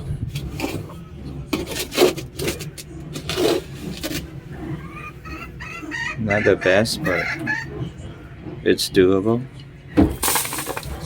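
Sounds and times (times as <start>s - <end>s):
sand rasping through metal scooper: 0.0s - 9.4s
chickens clucking: 3.9s - 9.5s.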